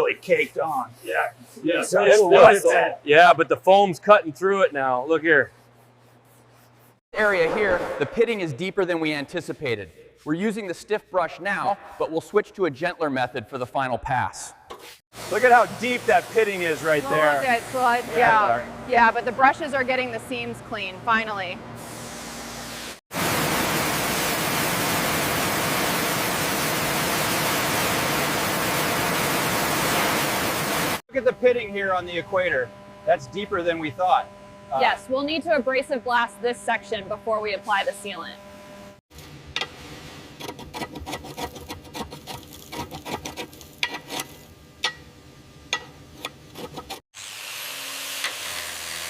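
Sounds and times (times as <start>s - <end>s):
pressure washer spraying: 15.2s - 18.1s
hand tools scraping rusted metal: 40.4s - 44.5s, 45.8s - 47.0s.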